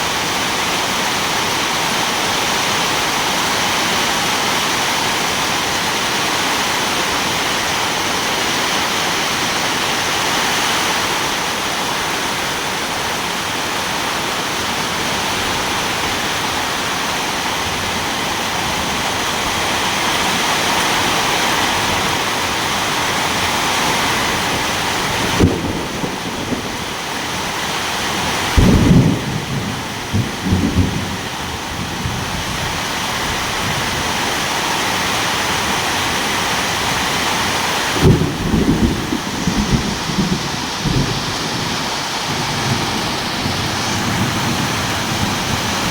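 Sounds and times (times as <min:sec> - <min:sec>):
steady rain: 0:00.0 - 0:45.9
low rumble of thunder: 0:28.4 - 0:32.6, 0:38.0 - 0:45.9
thunder crack: 0:38.0 - 0:45.9.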